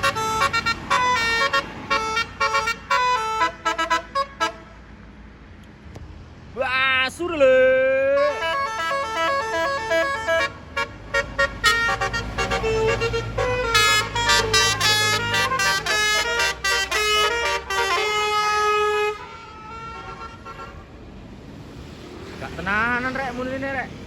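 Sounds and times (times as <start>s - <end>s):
musical air horn jingle: 0.0s - 4.7s, 8.2s - 20.8s
bus engine rumbling: 0.0s - 24.0s.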